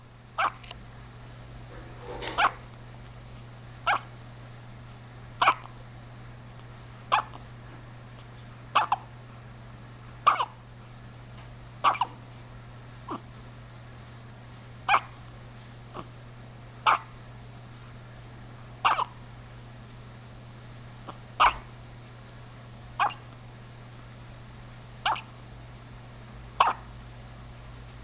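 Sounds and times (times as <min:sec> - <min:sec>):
baby hiccuping: 0:10.3 - 0:10.5, 0:11.8 - 0:12.1, 0:18.9 - 0:19.1, 0:21.4 - 0:21.6, 0:26.6 - 0:26.8.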